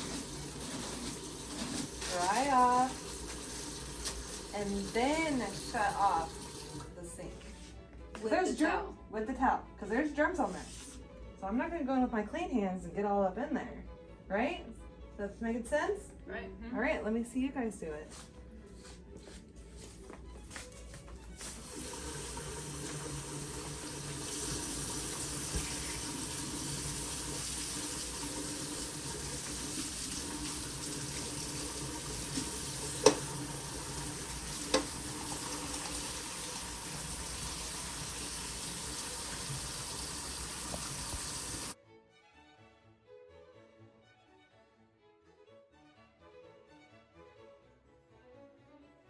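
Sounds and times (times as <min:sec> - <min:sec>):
tap water running into sink: 0:00.0 - 0:07.0, 0:21.4 - 0:41.8.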